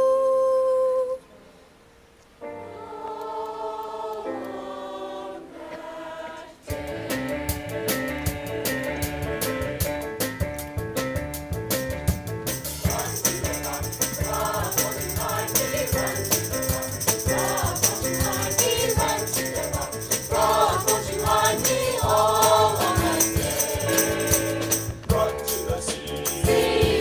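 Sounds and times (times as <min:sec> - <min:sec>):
choir singing: 0:02.4 - 0:10.0, 0:12.8 - 0:27.0
instrumental accompaniment with beat: 0:06.7 - 0:27.0
bright high percussion: 0:12.5 - 0:27.0.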